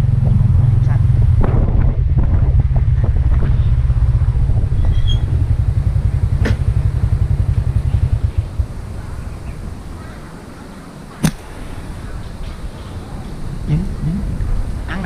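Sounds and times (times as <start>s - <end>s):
motorbike engine running: 0.0s - 15.0s
sharp click: 11.2s - 11.5s.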